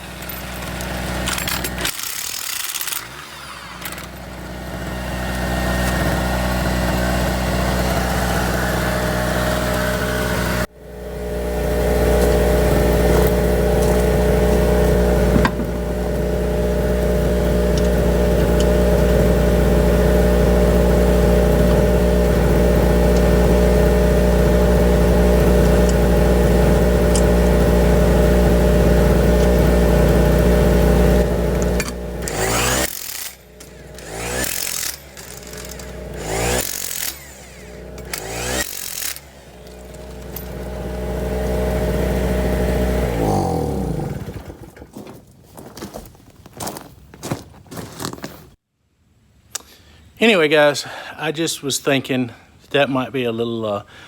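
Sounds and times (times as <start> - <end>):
two-stroke generator running: 0.0 - 44.9.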